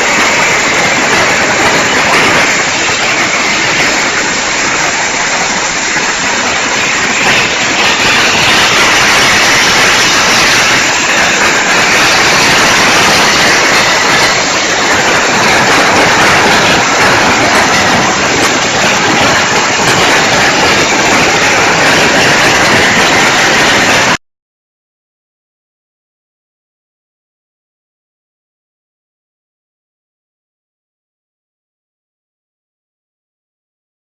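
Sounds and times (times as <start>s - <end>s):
firecrackers crackling: 0.0s - 24.2s.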